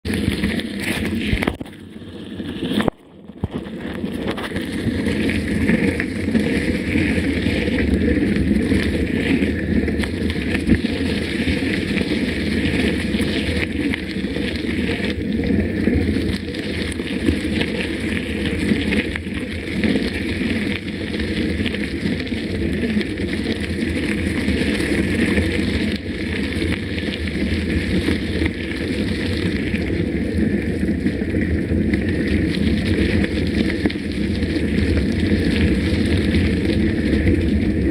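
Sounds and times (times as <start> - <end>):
bicycle rolling on dirt trail: 0.0 - 37.9.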